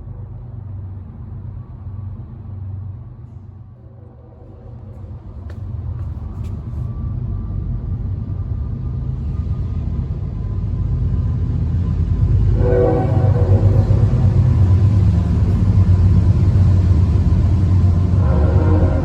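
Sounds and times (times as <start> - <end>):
train rumbling past: 0.0 - 19.0
train horn chord: 3.8 - 5.6, 12.4 - 16.1, 16.7 - 19.0.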